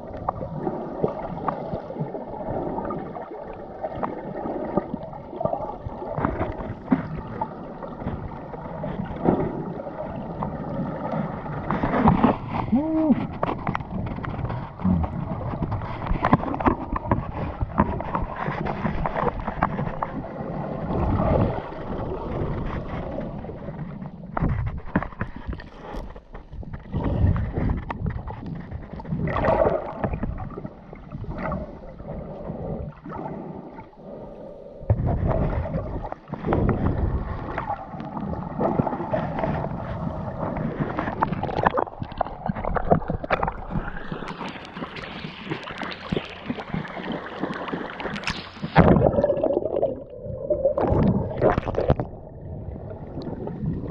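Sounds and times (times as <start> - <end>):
wind noise on microphone: 20.8 - 31.6, 34.9 - 37.6
sea waves splashing: 38.6 - 52.2.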